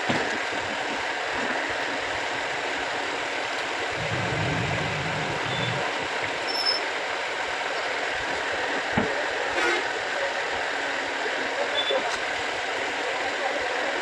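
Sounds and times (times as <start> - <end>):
electric water pump motor running: 0.8 - 7.6
low hum: 3.9 - 6.5.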